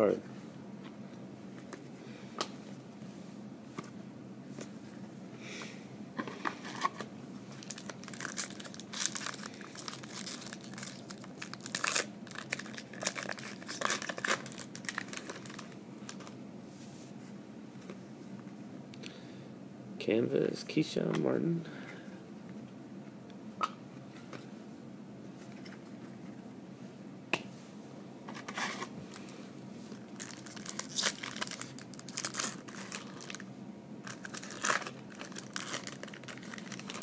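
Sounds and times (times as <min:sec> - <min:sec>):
wrapper tearing and crinkling: 0:07.6 - 0:16.3, 0:30.2 - 0:33.4, 0:34.0 - 0:37.0.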